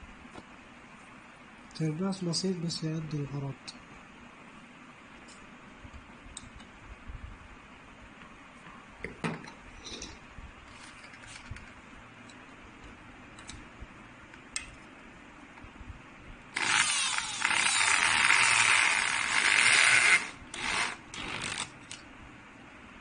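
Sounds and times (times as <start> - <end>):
electric drill-driver running: 16.6 - 22.0.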